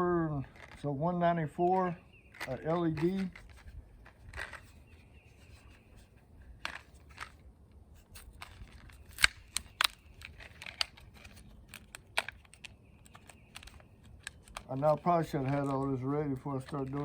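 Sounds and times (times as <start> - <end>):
packaging crinkling and clicking: 8.2 - 17.0
loud plastic snaps: 8.3 - 14.7.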